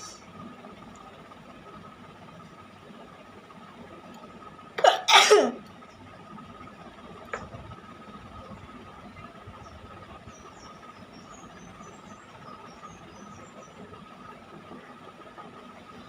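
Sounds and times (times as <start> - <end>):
faint steady hum: 0.0 - 16.0
woman sneezing: 4.8 - 5.6.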